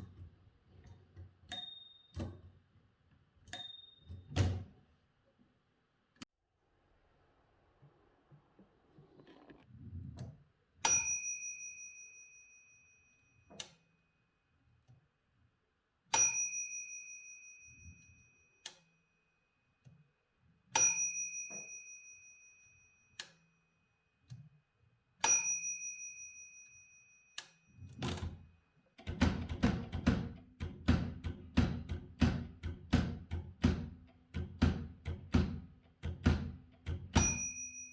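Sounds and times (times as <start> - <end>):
typewriter margin bell ding: 1.5 - 2.2, 3.5 - 4.4, 36.9 - 37.9.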